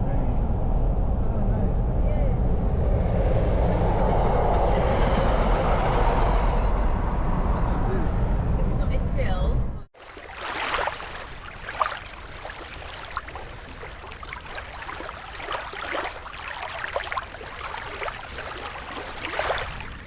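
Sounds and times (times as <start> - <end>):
water lapping and splashing: 10.0 - 20.0.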